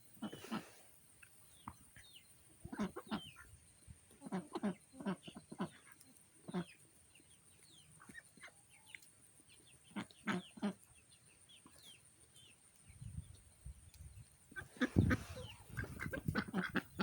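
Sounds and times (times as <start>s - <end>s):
chickens clucking softly: 0.1s - 6.8s, 12.8s - 17.0s.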